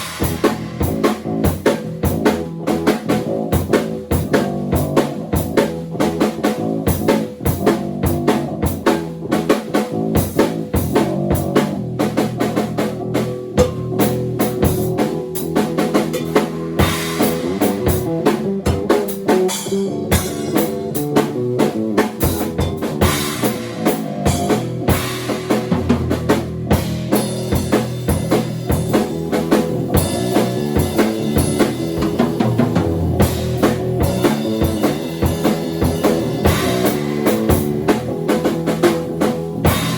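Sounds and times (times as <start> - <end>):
bass line: 0.0 - 39.9
drum kit groove: 0.0 - 39.9.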